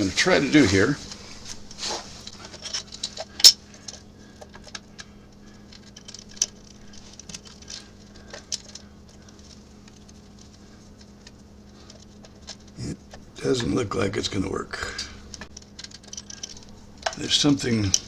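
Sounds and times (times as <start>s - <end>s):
metal engine parts rattling: 2.2s - 5.0s, 15.5s - 18.0s.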